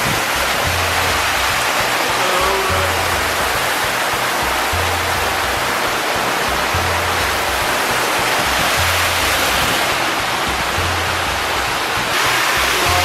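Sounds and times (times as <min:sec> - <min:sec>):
background music with low bass: 0:00.0 - 0:13.0
rushing water: 0:00.0 - 0:13.0.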